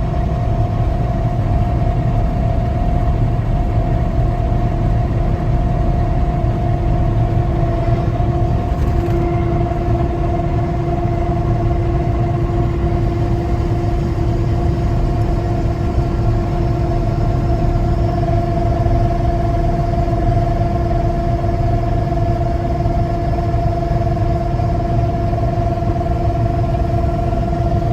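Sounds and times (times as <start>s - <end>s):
harvest machinery droning: 4.8s - 18.2s.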